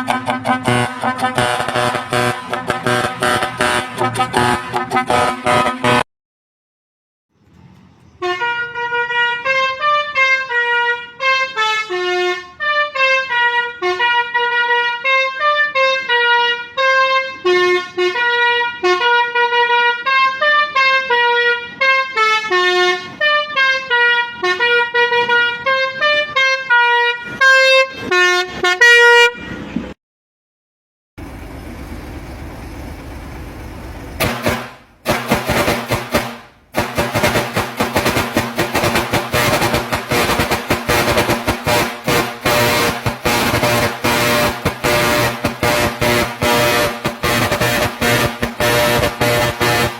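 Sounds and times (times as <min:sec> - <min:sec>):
loud bursts of sound: 0:00.0 - 0:06.0, 0:34.2 - 0:49.9
musical vehicle horn tune: 0:00.0 - 0:06.1, 0:08.2 - 0:30.0, 0:34.2 - 0:49.9
steady noise: 0:34.2 - 0:49.9.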